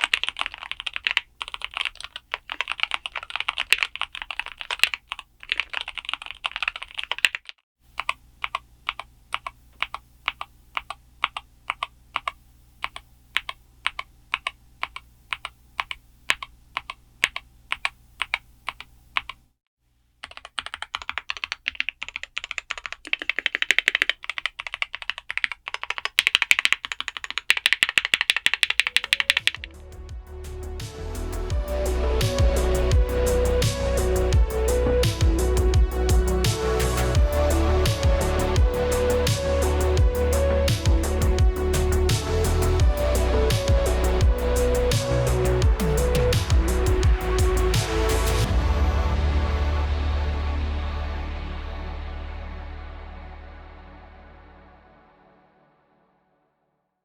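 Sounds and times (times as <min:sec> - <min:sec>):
clacky keyboard typing: 0:00.0 - 0:19.4, 0:20.2 - 0:29.7.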